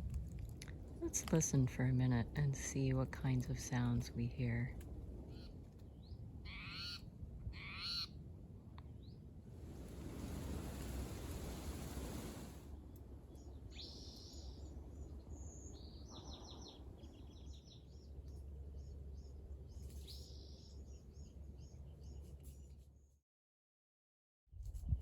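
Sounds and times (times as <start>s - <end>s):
low steady rumble: 0.0s - 7.6s, 8.2s - 16.0s.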